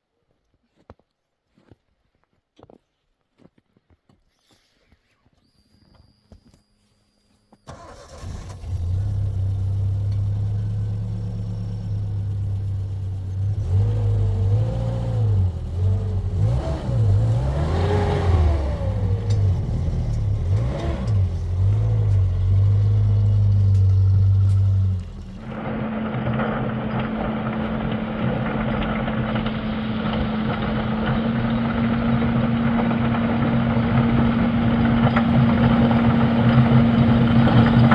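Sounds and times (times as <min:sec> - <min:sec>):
car engine revving: 0:07.7 - 0:37.9.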